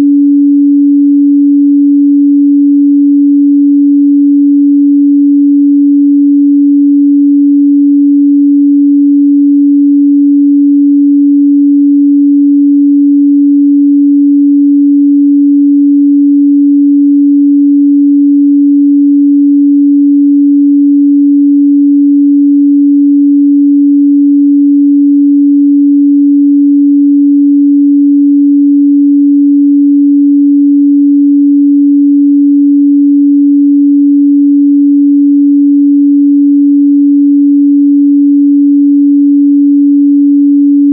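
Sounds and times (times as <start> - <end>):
sine-wave test tone: 0.0 - 40.9.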